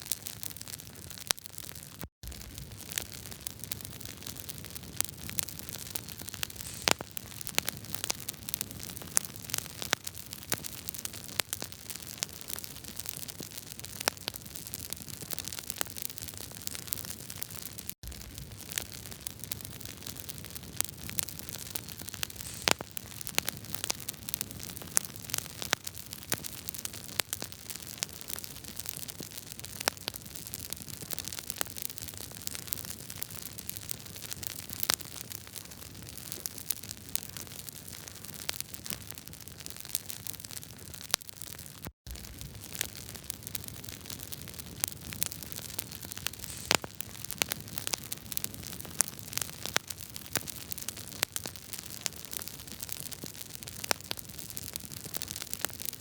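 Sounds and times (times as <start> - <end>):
wood fire crackling: 0.0 - 56.0
steady fire hiss: 2.3 - 9.9, 18.1 - 25.0, 42.1 - 49.8.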